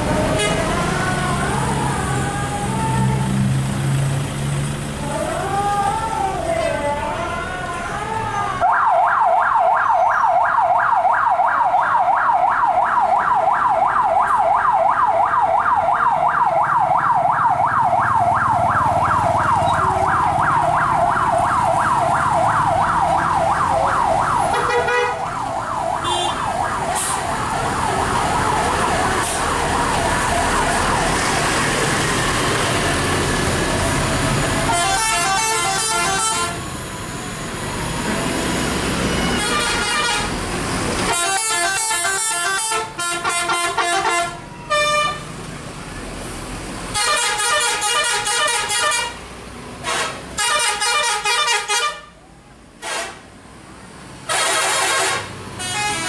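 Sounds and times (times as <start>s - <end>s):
bus engines running: 0.0s - 56.0s
multi-tone bus horn melody: 0.1s - 3.1s, 24.4s - 25.3s, 26.0s - 27.2s, 34.6s - 36.8s, 39.0s - 40.4s, 41.1s - 45.3s, 46.9s - 49.2s, 49.8s - 52.2s, 52.8s - 53.2s, 54.2s - 56.0s
warbling siren: 5.0s - 32.8s.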